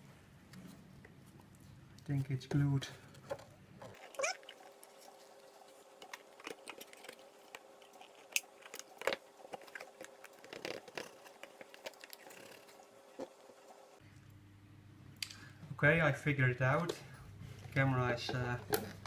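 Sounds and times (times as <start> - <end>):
hands handling camera case: 6.0 - 12.7.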